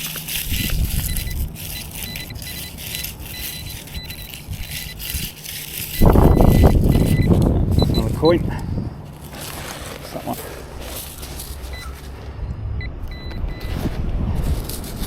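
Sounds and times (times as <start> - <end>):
sand and shingle rattling in sieve: 0.0 - 12.2, 13.7 - 15.0
faint metal detector tones: 0.0 - 13.8
loud low rumble: 12.2 - 14.7.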